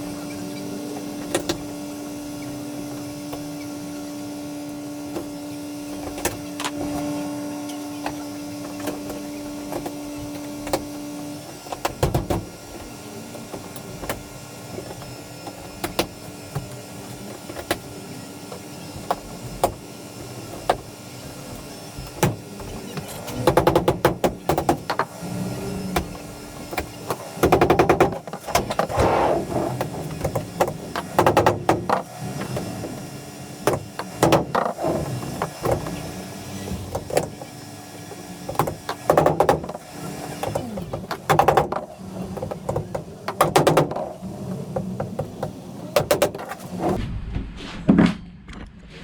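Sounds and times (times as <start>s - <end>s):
sharp knocks and clicks: 21.6s - 25.1s, 40.4s - 44.2s.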